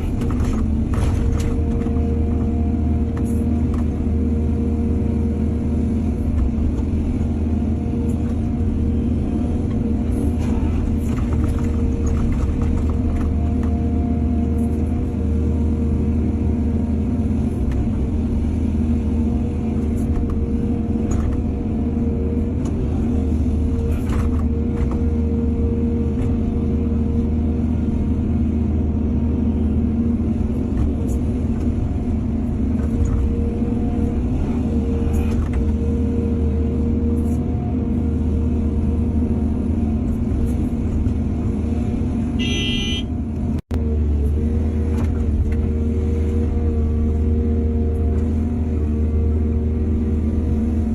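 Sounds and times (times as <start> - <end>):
excavator diesel engine running: 0.0 - 50.9
horn toot: 42.4 - 43.1.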